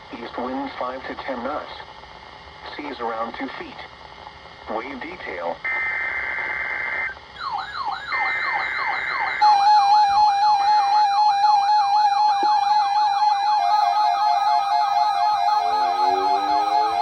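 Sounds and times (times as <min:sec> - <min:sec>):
electronic wailing siren: 0:07.4 - 0:17.0
steady electronic alert tone: 0:09.4 - 0:17.0
warbling data tones: 0:09.4 - 0:17.0.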